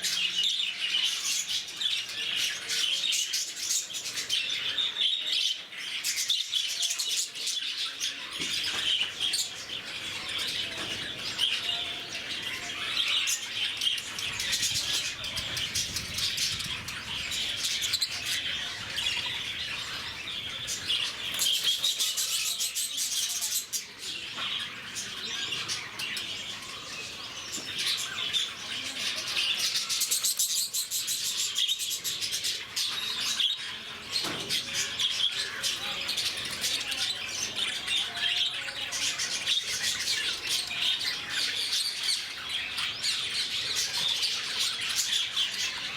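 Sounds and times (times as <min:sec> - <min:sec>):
lovebirds chattering: 0:00.0 - 0:45.9.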